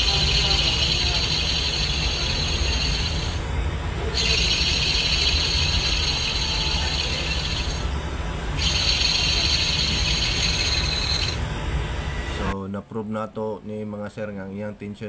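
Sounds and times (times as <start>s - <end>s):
car engine running: 0.0s - 3.5s
high rasping bearing whir: 0.0s - 12.5s.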